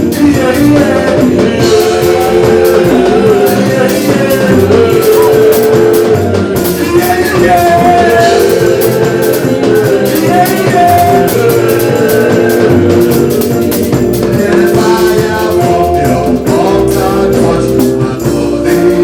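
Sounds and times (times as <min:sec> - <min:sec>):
drum kit beat: 0:00.0 - 0:19.0
live praise band music: 0:00.0 - 0:19.0.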